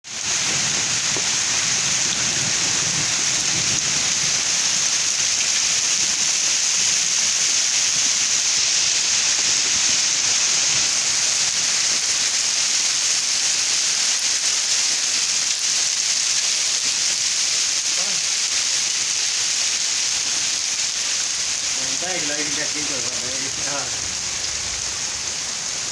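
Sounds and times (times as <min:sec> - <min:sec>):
floodwater rushing: 0:00.0 - 0:12.5, 0:20.1 - 0:25.9.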